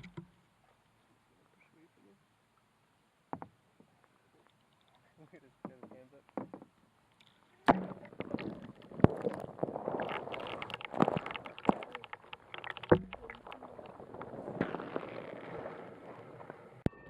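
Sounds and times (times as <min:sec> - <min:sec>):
paddle splashing water: 0:05.5 - 0:16.9.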